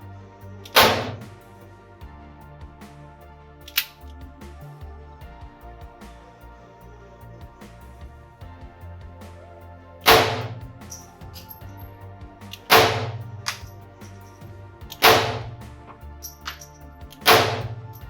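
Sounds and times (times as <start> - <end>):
pistol shots: 0.8 - 1.2, 10.1 - 10.6, 12.7 - 13.6, 15.0 - 15.5, 17.2 - 17.8.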